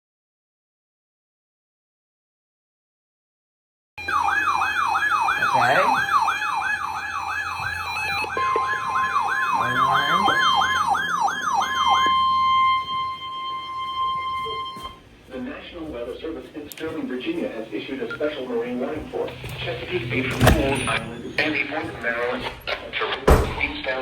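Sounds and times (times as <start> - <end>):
electronic siren-like wail: 4.0 - 15.0
steady high tone: 4.0 - 15.1.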